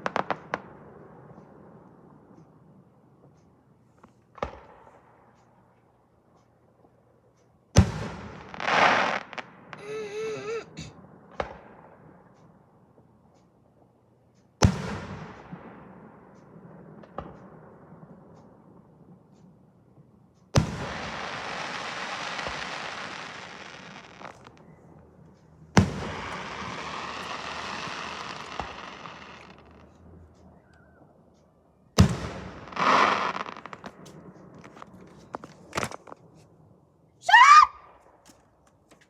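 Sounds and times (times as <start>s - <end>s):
fireworks crackling: 7.8s - 11.6s, 20.6s - 24.7s, 25.4s - 30.4s, 32.0s - 36.4s
fireworks bangs: 7.8s - 12.2s, 14.6s - 19.4s, 20.6s - 24.8s, 25.7s - 31.2s, 32.0s - 36.3s.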